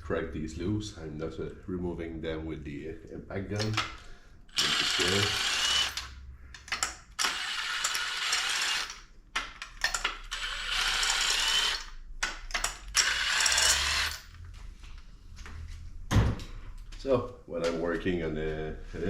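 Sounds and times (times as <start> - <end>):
cordless impact gun spinning: 3.6 - 9.0, 9.8 - 12.0, 12.6 - 14.4.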